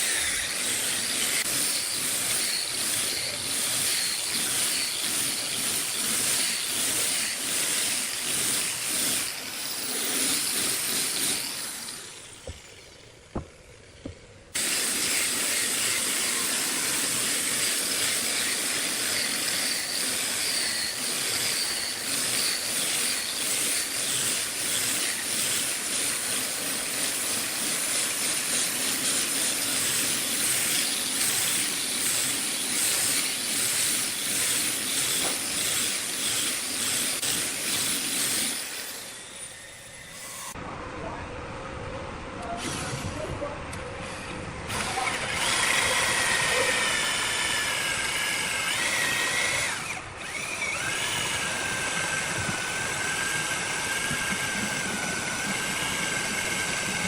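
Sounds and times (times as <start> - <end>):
workshop noise hiss: 42.3 - 47.4.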